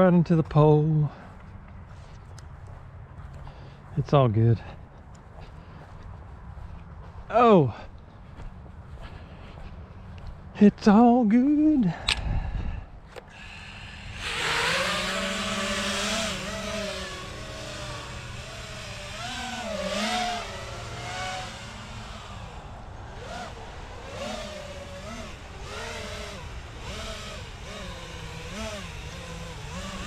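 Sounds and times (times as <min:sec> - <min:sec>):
quadcopter motors whining: 0:11.4 - 0:30.0.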